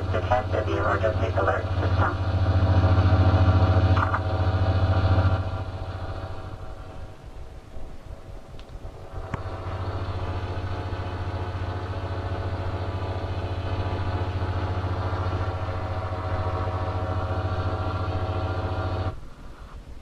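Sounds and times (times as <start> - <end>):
distorted electronic alert buzz: 0.0 - 6.5.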